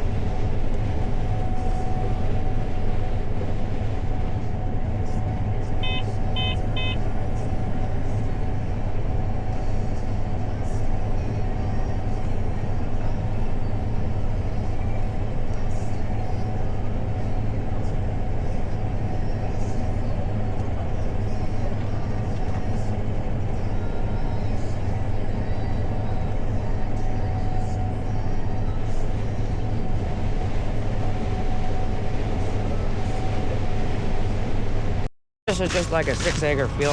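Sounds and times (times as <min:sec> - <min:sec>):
farm machinery engine droning: 0:00.0 - 0:36.9
short electronic beeps: 0:05.8 - 0:07.0.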